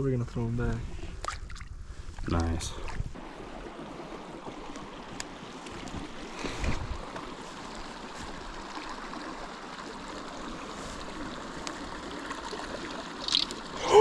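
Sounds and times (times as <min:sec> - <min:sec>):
creek running over stones: 0:01.0 - 0:14.0.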